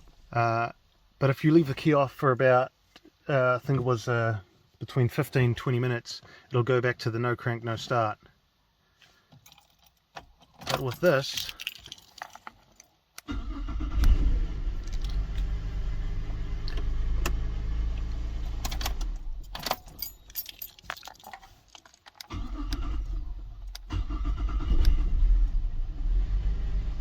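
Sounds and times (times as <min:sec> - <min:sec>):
keys jingling: 0:09.4 - 0:12.9, 0:18.6 - 0:22.6
car engine starting and idling: 0:13.3 - 0:20.1, 0:22.2 - 0:27.0.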